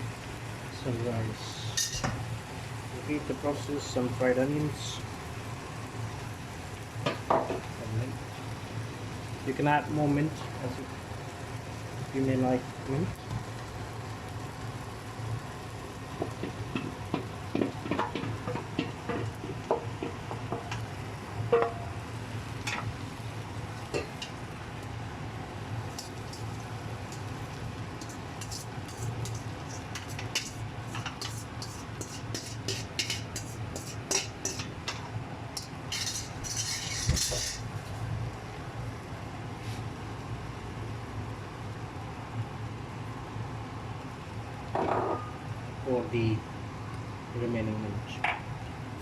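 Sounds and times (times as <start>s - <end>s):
metal utensil clinking on pot: 1.8s - 2.1s, 35.6s - 37.6s.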